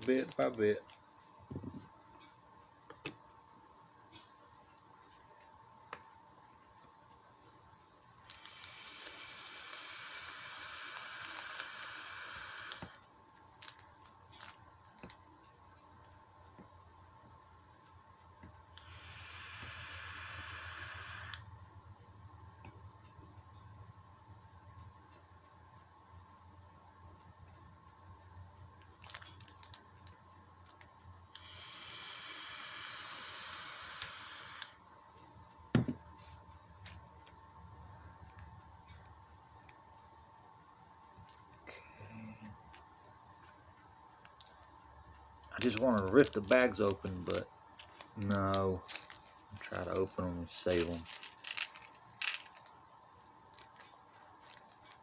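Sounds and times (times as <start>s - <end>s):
steady hiss: 8.3s - 13.0s, 18.8s - 21.5s, 31.4s - 35.0s, 45.5s - 52.6s
thump: 35.8s - 36.0s
plastic bag rustling: 45.8s - 52.8s
small clicks of parts handled: 50.7s - 52.8s.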